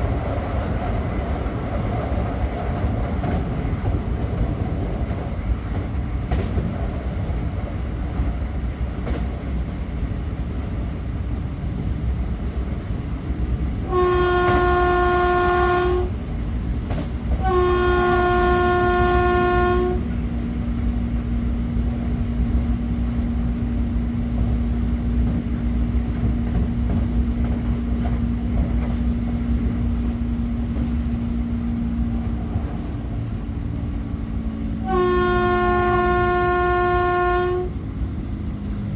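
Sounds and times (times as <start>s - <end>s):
train rumbling: 0.0s - 38.9s
train horn blasts: 13.8s - 16.2s, 17.4s - 20.2s, 34.7s - 37.8s.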